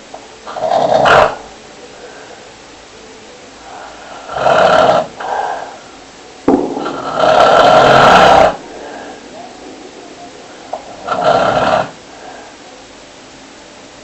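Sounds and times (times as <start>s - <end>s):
loud snoring: 0.5s - 1.4s, 4.1s - 5.8s, 10.8s - 12.0s.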